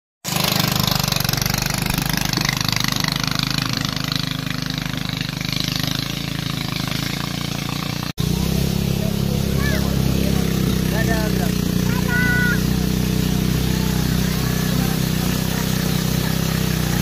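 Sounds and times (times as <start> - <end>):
small engine running: 0.2 - 17.0.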